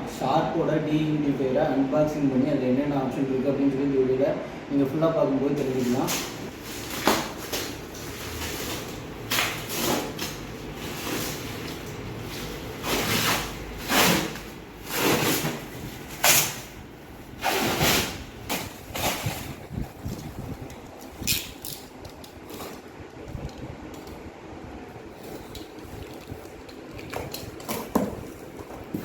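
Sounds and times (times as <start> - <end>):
packaging rustling and scraping: 5.6 - 23.0, 25.0 - 29.0.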